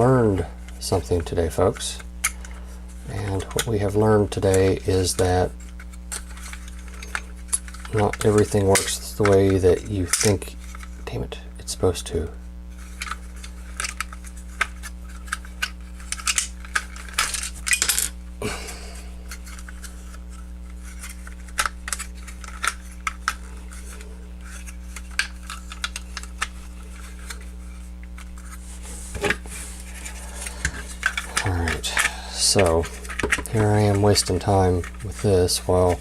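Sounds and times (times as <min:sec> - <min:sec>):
low electrical hum: 0:00.0 - 0:36.0
plastic toy parts clicking: 0:21.0 - 0:23.4.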